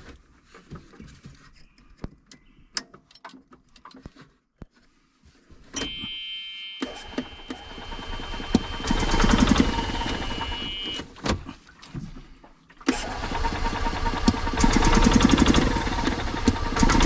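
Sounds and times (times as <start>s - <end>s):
golf cart engine starting and running: 6.8s - 11.2s, 12.9s - 17.0s.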